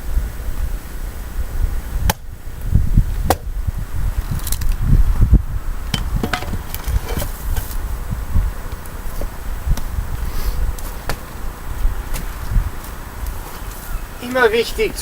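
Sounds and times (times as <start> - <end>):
firewood knocking: 5.9 - 7.0.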